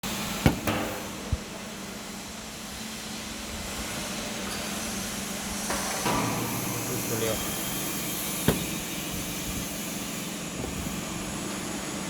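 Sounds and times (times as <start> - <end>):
packaging machinery humming: 0.0 - 2.3, 6.0 - 12.0
sharp knock: 8.4 - 8.9
short low thump: 8.4 - 9.0.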